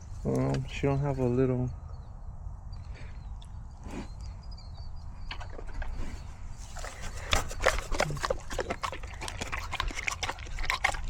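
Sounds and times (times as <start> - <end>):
pig chomping and smacking: 5.3 - 11.0.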